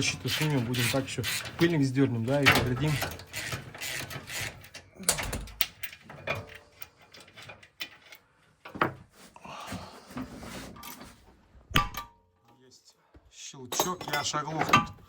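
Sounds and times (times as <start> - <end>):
hand tools knocking and scraping: 0.0 - 9.1, 13.8 - 15.0.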